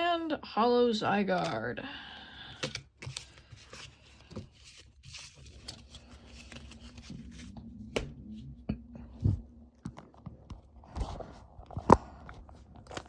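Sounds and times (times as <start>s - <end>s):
trading cards rustling: 2.5s - 8.0s.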